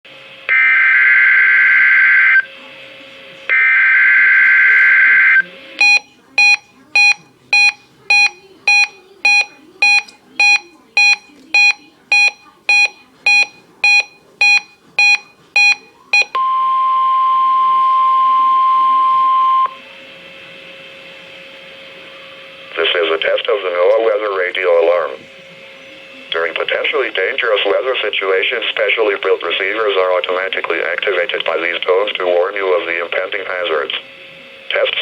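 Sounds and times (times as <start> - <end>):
steady warning alarm tone: 0.2 - 2.6, 3.5 - 21.6
receiver buzzer beeping: 0.5 - 2.6, 3.4 - 19.9.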